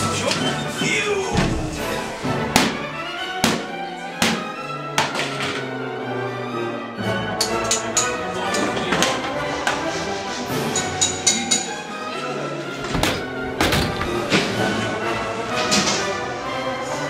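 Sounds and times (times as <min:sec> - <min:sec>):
orchestral music with strings: 0:00.0 - 0:17.0
sharp knocks and bangs: 0:01.3 - 0:05.6, 0:12.9 - 0:14.8.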